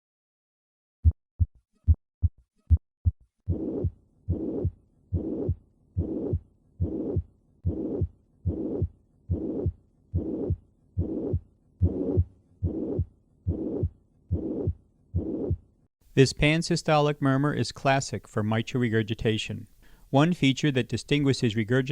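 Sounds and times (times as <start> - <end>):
heartbeat through stethoscope: 1.0 - 15.7
blowing heart murmur: 3.0 - 15.7.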